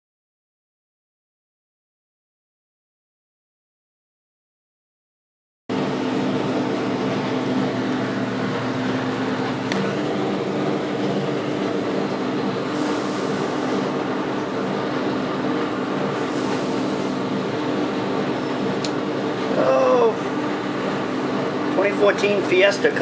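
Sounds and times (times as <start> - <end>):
machine hum: 5.7 - 23.0.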